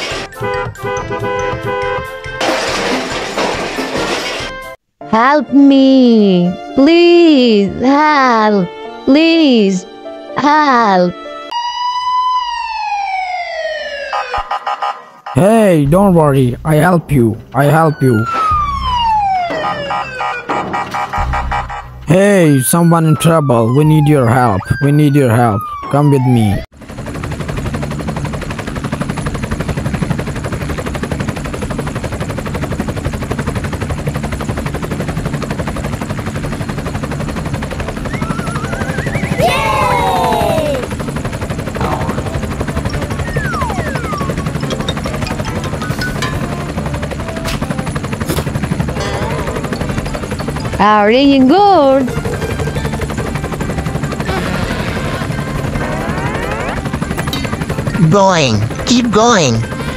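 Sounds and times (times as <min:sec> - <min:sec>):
helicopter rotor chopping: 0:12.2 - 0:59.9
rising whistling sweep: 0:38.1 - 0:39.4.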